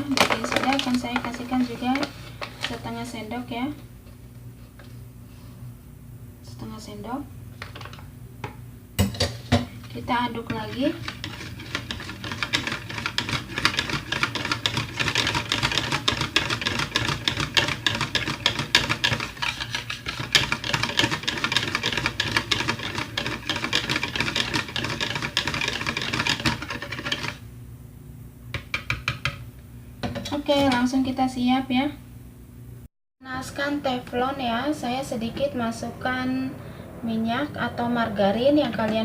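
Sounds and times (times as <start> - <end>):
utensil stirring batter in a bowl: 0.0 - 2.9, 9.8 - 27.4.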